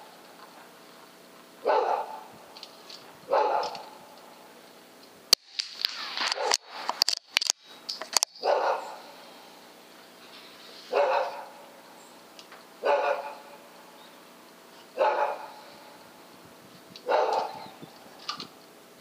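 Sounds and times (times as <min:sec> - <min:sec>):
dog barking: 0:01.6 - 0:02.3, 0:03.3 - 0:04.0, 0:08.4 - 0:09.1, 0:10.9 - 0:11.6, 0:12.8 - 0:13.6, 0:15.0 - 0:15.7, 0:17.0 - 0:17.7.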